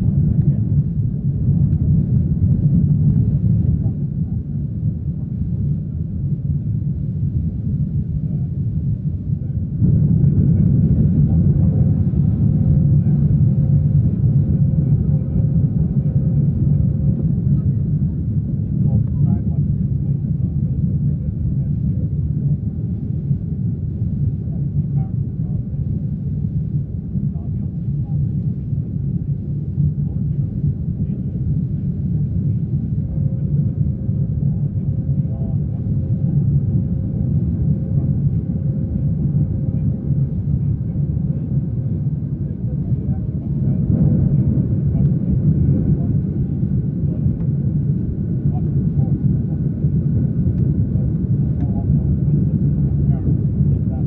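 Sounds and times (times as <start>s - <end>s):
airliner rumble: 0.0s - 54.0s
faint steady tones: 0.0s - 54.0s
jet engines during takeoff: 0.0s - 54.0s.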